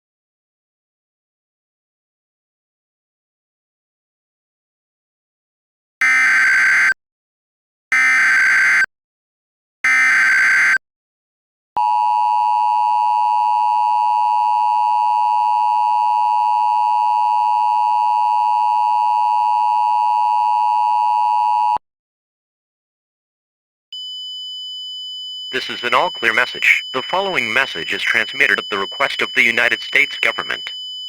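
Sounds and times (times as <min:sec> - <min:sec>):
two-tone attention signal: 0:25.6 - 0:31.0.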